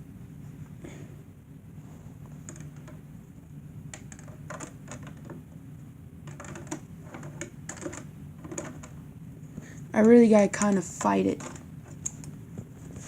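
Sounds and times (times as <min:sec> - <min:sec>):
steady low hum: 0:00.0 - 0:13.0
fan cage clicks and knocks: 0:02.4 - 0:03.0, 0:03.9 - 0:05.5, 0:06.2 - 0:09.0, 0:10.0 - 0:12.7.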